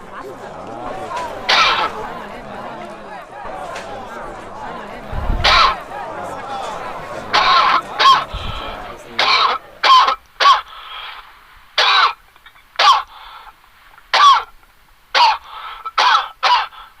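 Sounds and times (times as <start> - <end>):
person clearing throat: 1.2 - 2.0, 7.4 - 10.6, 11.8 - 12.2, 16.0 - 16.9.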